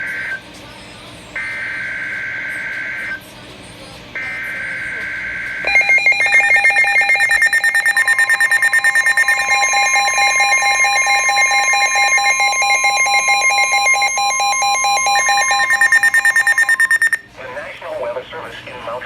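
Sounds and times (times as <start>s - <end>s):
rapidly pulsing electronic alarm: 1.4s - 3.2s, 4.2s - 17.3s
steady alarm tone: 4.2s - 17.2s.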